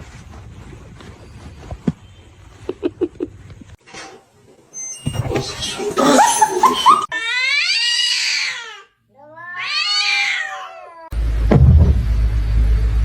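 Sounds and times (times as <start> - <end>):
cat meowing: 7.2 - 11.1.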